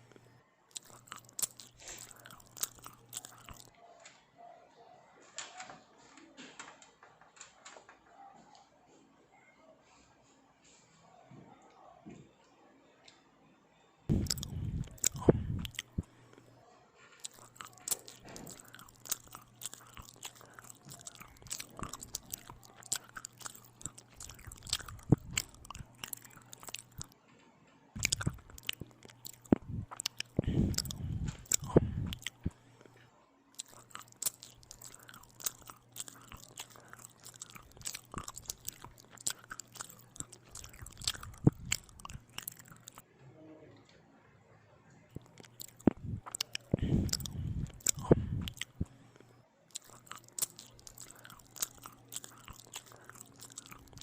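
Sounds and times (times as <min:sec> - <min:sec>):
crunchy chewing of bread: 0:00.0 - 0:03.8, 0:14.1 - 0:27.2, 0:28.0 - 0:43.1, 0:45.2 - 0:54.0.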